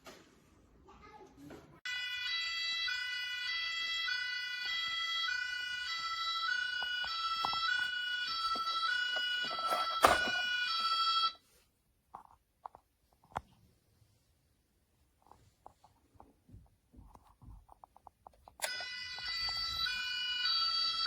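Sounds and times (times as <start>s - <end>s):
two-tone toy siren: 1.9s - 11.4s, 18.6s - 21.0s.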